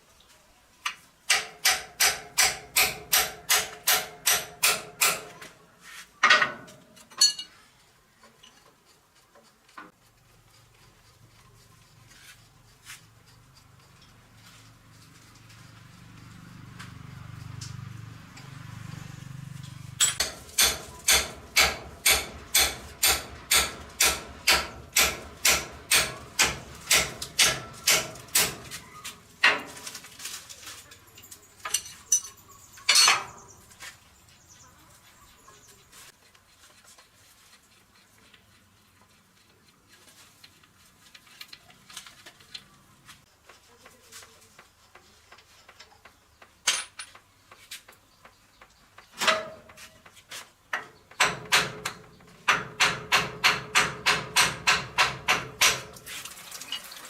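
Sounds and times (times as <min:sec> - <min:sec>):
hammer striking metal: 0:01.3 - 0:05.4, 0:20.0 - 0:28.8, 0:51.2 - 0:55.9
metal clinks and knocks: 0:06.2 - 0:07.6, 0:19.6 - 0:33.6, 0:46.6 - 0:47.3.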